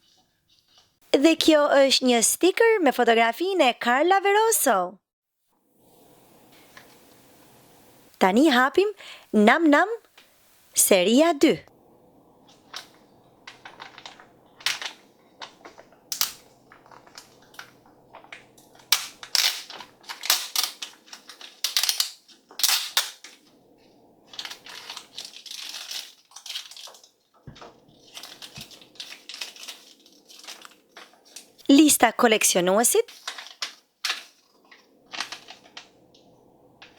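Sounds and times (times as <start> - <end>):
plastic packaging crinkling and tearing: 12.5 - 23.5, 24.3 - 31.6, 33.1 - 36.9.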